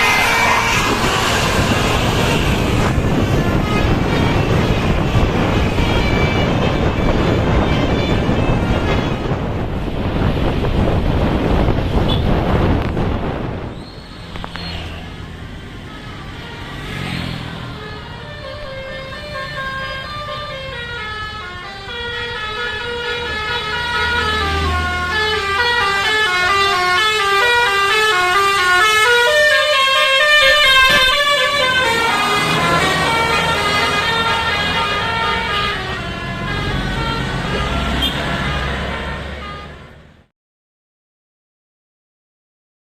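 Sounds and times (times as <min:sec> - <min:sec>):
bus horn playing a tune: 0:00.0 - 0:09.5, 0:17.7 - 0:40.0
wind on microphone: 0:00.0 - 0:14.7
bus engine running: 0:00.0 - 0:40.3.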